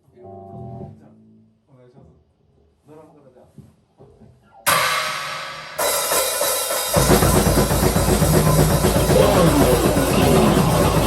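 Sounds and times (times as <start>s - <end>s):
cymbal crash: 4.7s - 11.0s
rock band playing: 4.7s - 11.0s.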